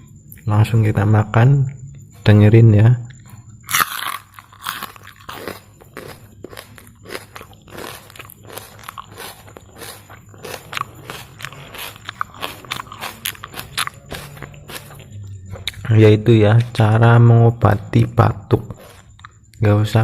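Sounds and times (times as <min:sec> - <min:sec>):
biting and chewing raw shallot: 0:03.1 - 0:15.9, 0:18.6 - 0:19.6.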